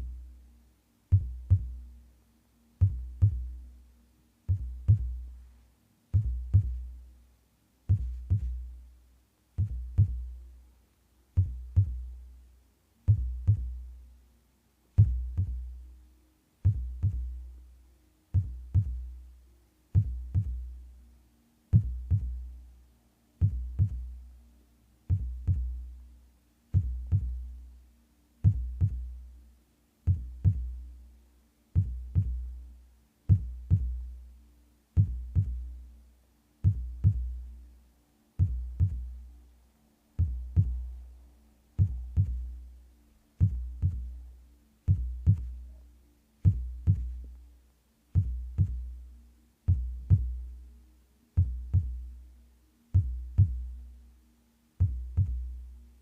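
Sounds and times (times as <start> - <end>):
faint steady hum: 0.0 - 56.0
slow booming heartbeat: 1.1 - 1.8, 2.8 - 3.6, 4.5 - 5.3, 6.2 - 6.9, 7.9 - 8.6, 9.6 - 10.3, 11.4 - 12.1, 13.1 - 13.8, 15.0 - 15.7, 16.7 - 17.4, 20.0 - 20.7, 21.8 - 22.5, 26.8 - 27.5, 28.4 - 29.2, 30.1 - 30.8, 31.8 - 32.5, 33.3 - 34.0, 35.0 - 35.7, 36.6 - 37.4, 38.4 - 39.1, 40.2 - 40.9, 41.8 - 42.5, 43.4 - 44.2, 44.9 - 45.6, 46.5 - 47.2, 48.2 - 48.9, 49.7 - 50.4, 51.4 - 52.1, 53.0 - 53.7, 54.8 - 55.5.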